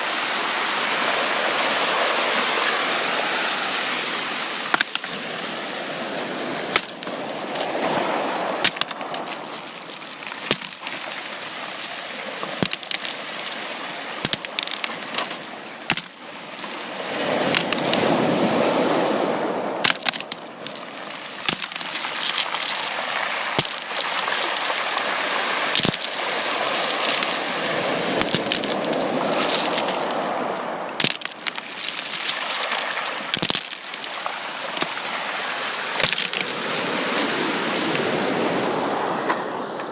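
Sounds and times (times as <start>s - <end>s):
sea waves washing onto beach: 0.0s - 39.9s
sharp clicks and crackles: 8.6s - 13.6s, 14.2s - 16.8s, 19.8s - 20.8s, 21.4s - 23.0s, 23.6s - 25.1s, 25.8s - 27.4s, 28.2s - 30.2s, 31.0s - 34.9s.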